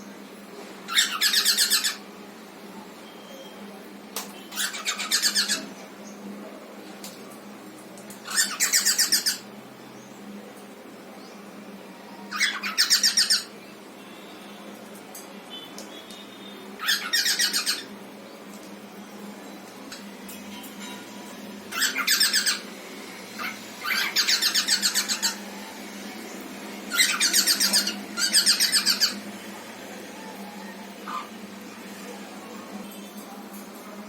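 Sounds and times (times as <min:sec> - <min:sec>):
cockatiel chattering calls: 0:00.9 - 0:02.0, 0:04.5 - 0:05.7, 0:08.3 - 0:09.4, 0:12.3 - 0:13.5, 0:16.8 - 0:17.9, 0:21.7 - 0:22.6, 0:23.4 - 0:25.4, 0:26.9 - 0:29.2.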